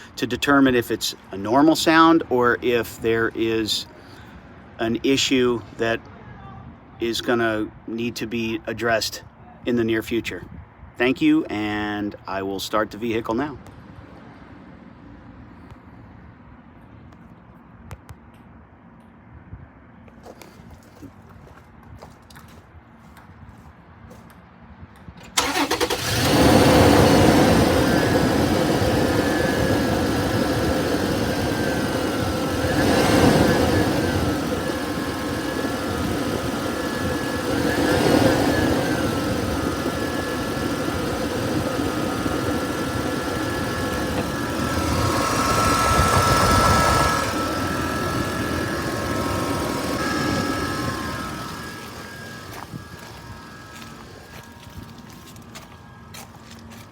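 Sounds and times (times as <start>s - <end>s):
engine cranking and starting: 25.2s - 55.5s
engine belt whirring whine: 25.2s - 56.8s.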